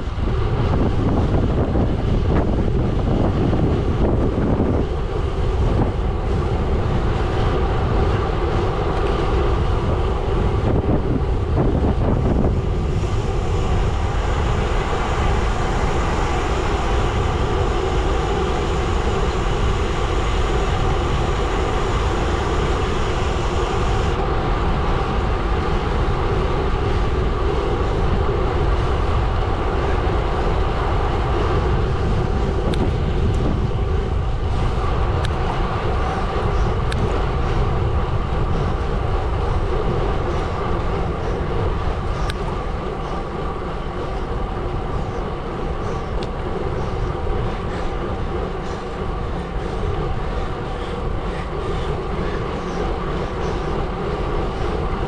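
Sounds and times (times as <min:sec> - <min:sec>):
bike tyres rolling on gravel: 0:00.0 - 0:55.0.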